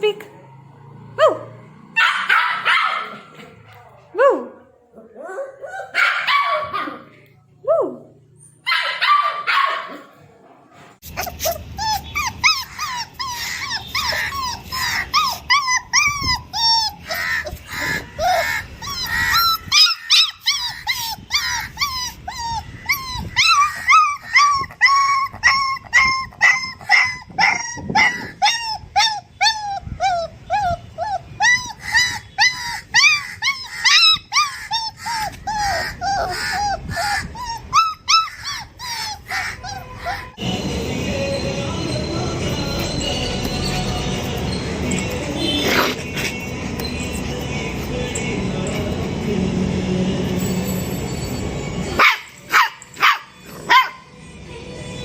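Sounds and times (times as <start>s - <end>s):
puppies whining and yelping: 11.2s - 40.4s, 51.0s - 54.1s.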